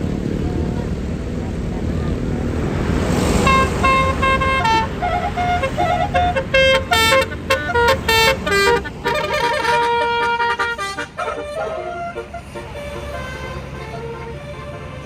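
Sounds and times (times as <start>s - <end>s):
low rumble: 0.0s - 9.4s
bus horn playing a tune: 0.3s - 15.0s.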